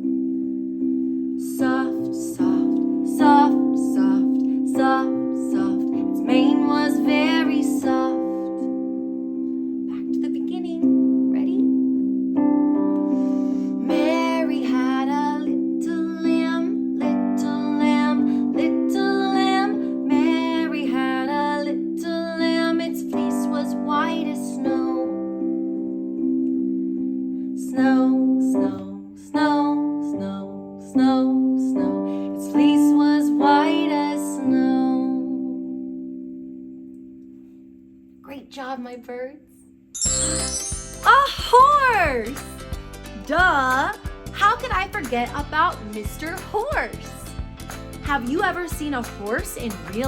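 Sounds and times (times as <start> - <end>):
piano chords: 0.0 - 37.3, 40.0 - 50.0
woman singing: 1.4 - 8.7, 13.8 - 25.2, 27.6 - 35.6, 41.0 - 42.6, 43.2 - 47.3.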